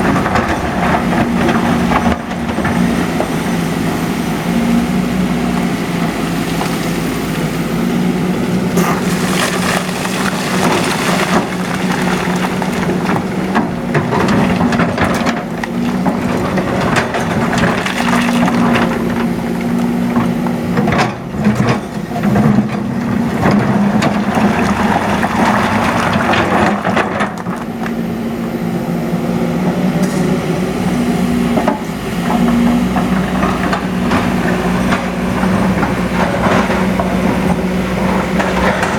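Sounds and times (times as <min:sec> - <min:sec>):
excavator diesel engine: 0:00.0 - 0:38.9
stone and earth knocking: 0:08.8 - 0:19.4.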